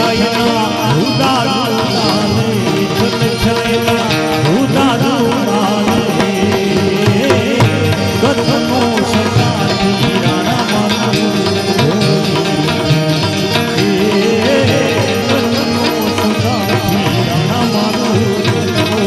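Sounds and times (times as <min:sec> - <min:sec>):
gliding melody: 0:00.0 - 0:19.0
rhythmic drumming: 0:00.0 - 0:19.0.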